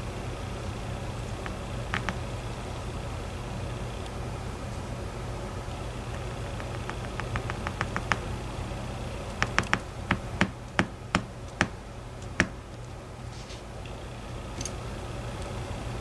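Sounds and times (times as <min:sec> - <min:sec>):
lock pins clicking and tapping: 0:01.2 - 0:02.8, 0:06.1 - 0:13.0, 0:14.5 - 0:15.6.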